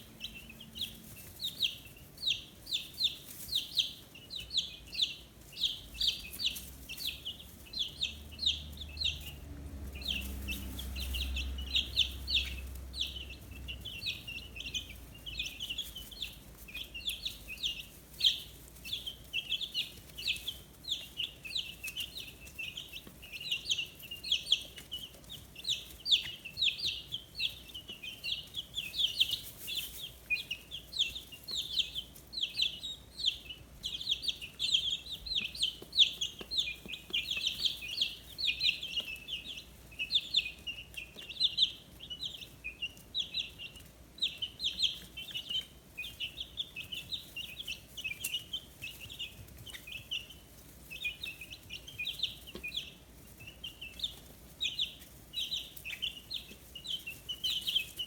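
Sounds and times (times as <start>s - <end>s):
faint low rumble: 0.0s - 45.4s
chicks peeping: 0.0s - 58.0s.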